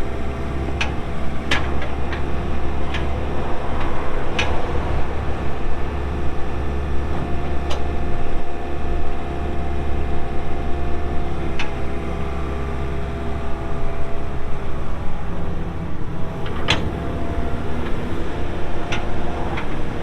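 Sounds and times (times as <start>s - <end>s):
excavator diesel engine running: 0.0s - 20.0s.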